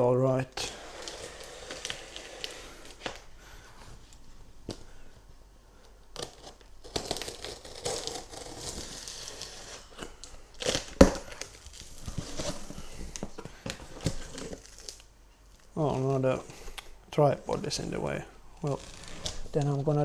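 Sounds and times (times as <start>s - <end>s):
cardboard tearing and crinkling: 0.5s - 4.1s, 6.1s - 15.1s, 15.8s - 20.0s
knife slitting tape and cardboard: 0.6s - 3.2s, 6.2s - 14.9s.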